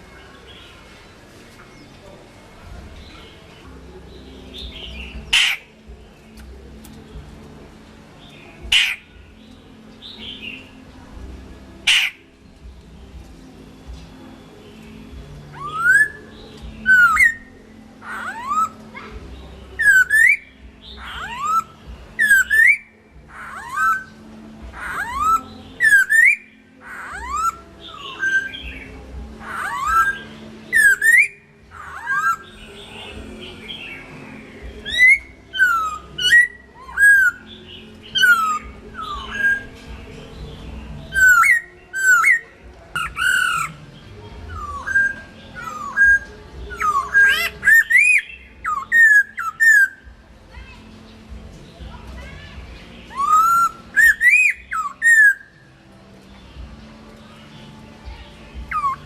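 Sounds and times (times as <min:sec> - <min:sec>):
high chattering bird notes: 0:02.6 - 0:07.0, 0:08.2 - 0:10.9, 0:11.8 - 0:13.1, 0:14.6 - 0:55.5, 0:57.4 - 0:59.0
bird singing whistled notes: 0:14.0 - 0:24.2, 0:24.8 - 0:50.1, 0:52.8 - 0:55.6, 0:57.4 - 0:59.0.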